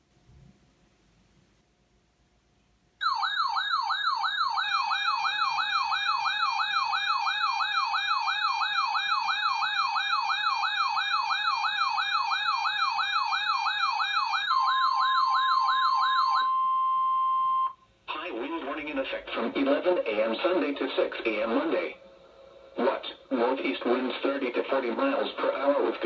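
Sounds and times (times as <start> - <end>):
electronic siren wailing: 3.0 - 17.4
steady alarm tone: 3.0 - 17.8.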